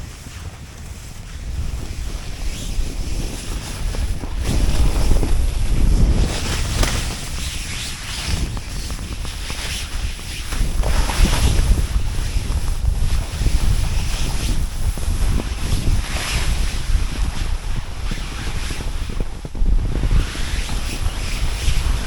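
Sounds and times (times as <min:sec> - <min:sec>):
snowboard edge scraping snow: 0:00.0 - 0:22.0
wind rumble on microphone: 0:00.0 - 0:22.0.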